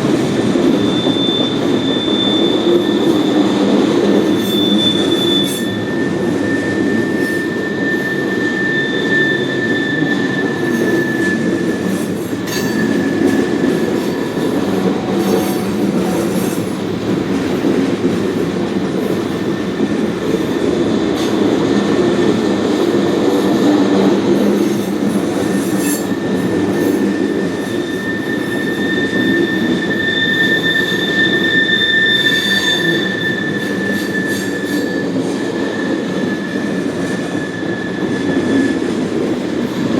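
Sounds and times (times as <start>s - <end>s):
freight train rumbling past: 0.0s - 39.9s
wheel flanges squealing: 0.7s - 17.5s, 24.7s - 39.0s.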